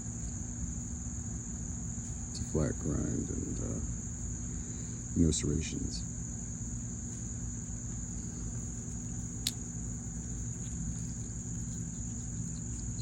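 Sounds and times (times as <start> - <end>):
crickets chirping: 0.0 - 13.0
low steady hum: 5.8 - 13.0.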